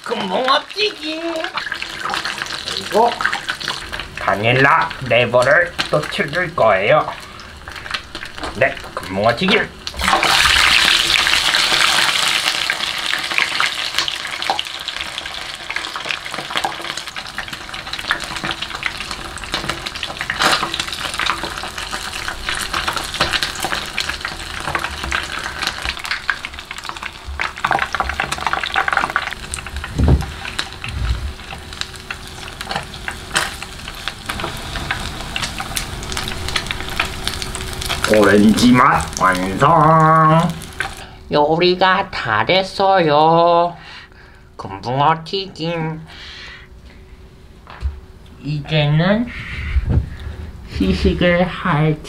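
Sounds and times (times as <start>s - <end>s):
fish sizzling in hot oil: 0.0s - 41.1s.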